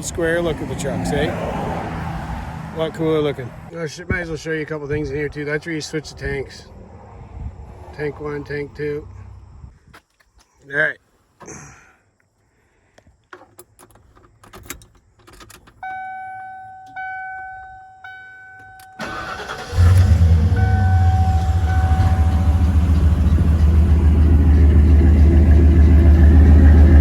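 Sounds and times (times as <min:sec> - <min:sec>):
clicks and rattles: 0:13.2 - 0:15.8
dashboard warning chime: 0:15.8 - 0:23.3
starter cranking: 0:19.0 - 0:20.4
truck engine idling: 0:19.0 - 0:27.0.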